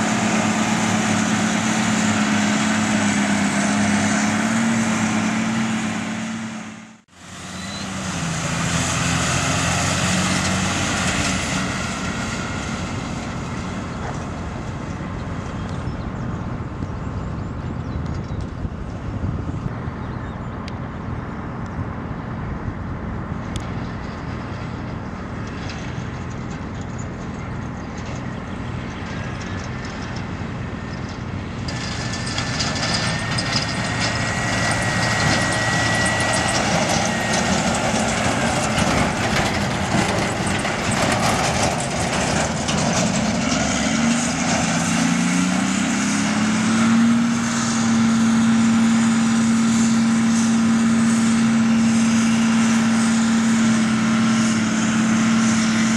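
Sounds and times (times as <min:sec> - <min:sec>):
diesel engines running: 0:00.0 - 0:55.9
high whine: 0:29.0 - 0:55.9.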